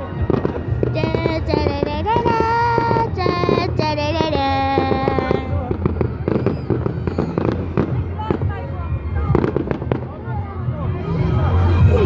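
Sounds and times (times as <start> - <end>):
high voice singing: 1.0 - 5.6.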